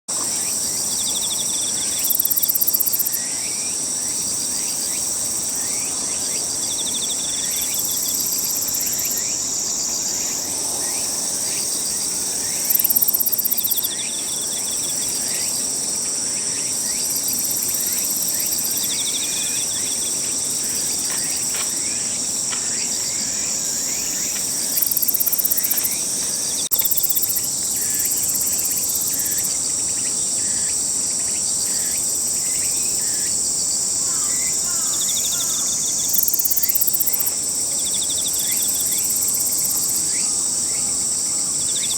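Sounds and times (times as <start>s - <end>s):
high drone of insects: 0.1s - 41.9s
katydid buzzy trills: 1.9s - 3.2s, 7.4s - 15.6s, 23.0s - 29.4s, 35.1s - 37.3s.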